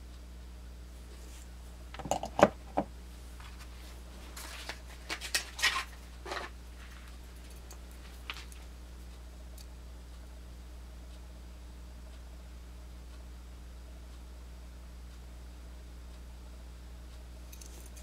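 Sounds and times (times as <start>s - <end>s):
steady low hum: 0.0s - 18.0s
rustling and light scraping: 1.1s - 1.6s, 3.4s - 8.7s
knives clicking and knocking: 17.5s - 18.0s.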